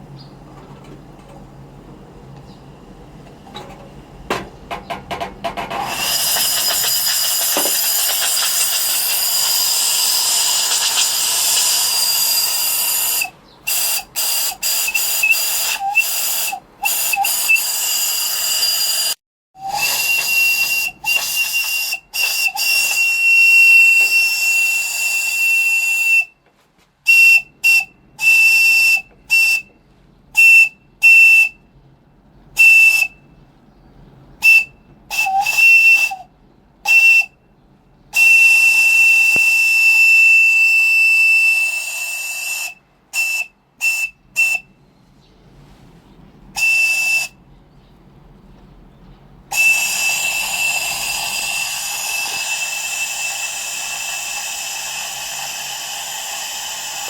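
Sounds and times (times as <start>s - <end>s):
hiss of steam: 5.8s - 26.1s, 49.6s - 57.0s
steam whistle blowing: 5.8s - 26.4s, 27.0s - 29.8s, 30.4s - 31.6s, 32.6s - 33.2s, 34.4s - 37.4s, 38.1s - 44.7s, 46.5s - 47.4s, 49.5s - 57.0s.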